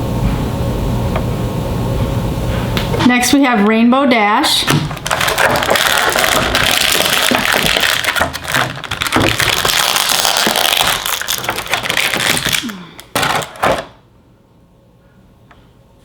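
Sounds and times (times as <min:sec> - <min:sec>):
plastic packaging crinkling: 0:04.9 - 0:14.0.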